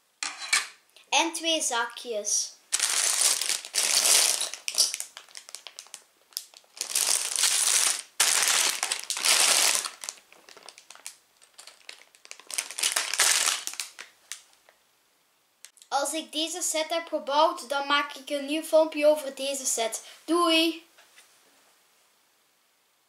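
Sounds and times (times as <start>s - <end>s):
plastic bags crinkling: 2.7s - 14.6s.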